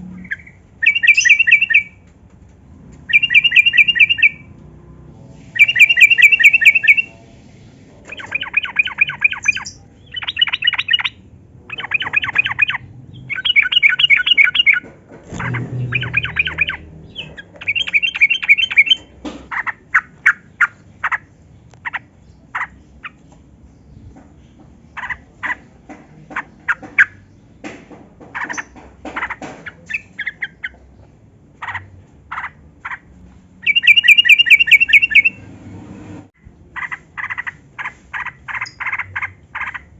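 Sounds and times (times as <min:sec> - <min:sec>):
sharp bird notes: 0:00.0 - 0:02.0, 0:08.1 - 0:21.2, 0:33.6 - 0:35.5
bird chattering calls: 0:00.2 - 0:01.9, 0:08.1 - 0:23.2.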